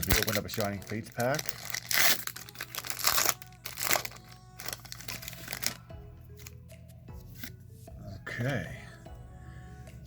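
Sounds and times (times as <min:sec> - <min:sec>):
foil pack crinkling and tearing: 0:00.0 - 0:05.8
background music: 0:00.0 - 0:10.0.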